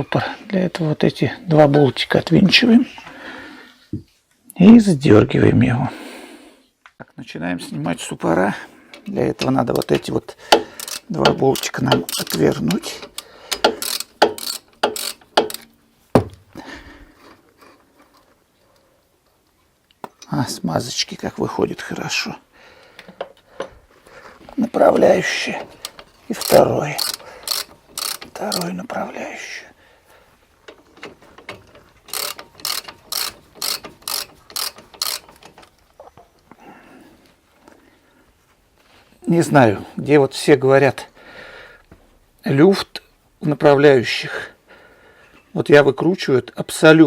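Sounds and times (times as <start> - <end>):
wrench clicking and knocking on metal: 8.9 - 16.4, 25.3 - 28.8, 30.7 - 35.8
faint metal scraping: 23.4 - 36.4.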